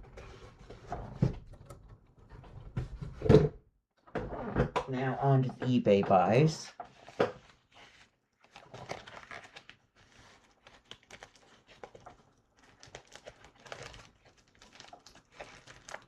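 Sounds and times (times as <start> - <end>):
packaging crinkling and rustling: 6.9 - 16.0.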